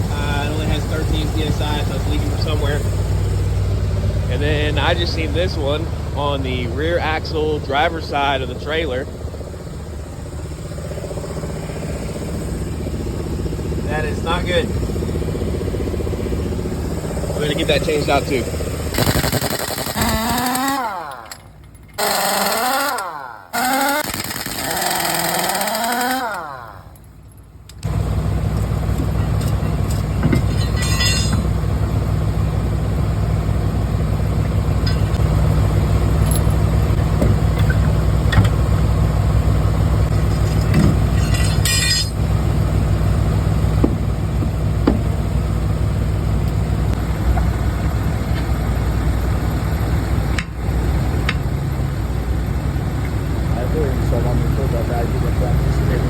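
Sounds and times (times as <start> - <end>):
heavy engine droning: 0.0 - 56.0
engine revving: 10.2 - 21.2, 22.0 - 27.0
hissing bursts: 18.9 - 20.8.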